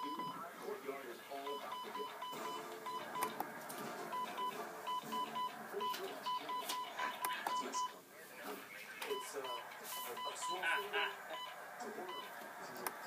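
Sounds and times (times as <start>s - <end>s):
fire alarm beeping: 1.5s - 3.4s, 4.1s - 7.9s, 9.1s - 12.4s.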